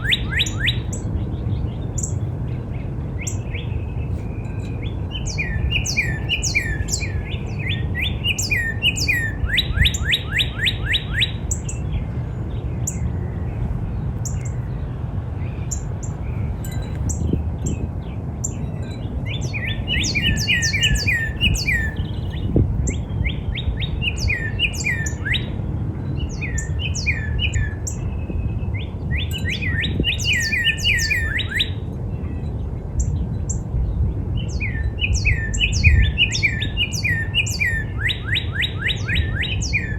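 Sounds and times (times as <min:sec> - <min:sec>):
cardinal singing whistles: 0:00.0 - 0:01.0, 0:03.3 - 0:11.4, 0:18.7 - 0:25.6, 0:29.2 - 0:31.8, 0:34.6 - 0:39.9.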